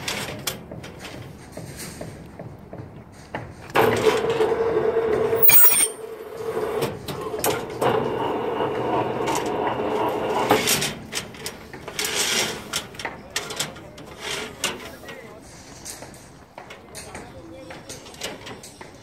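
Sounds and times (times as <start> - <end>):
sharp metallic clank: 5.4 - 6.0.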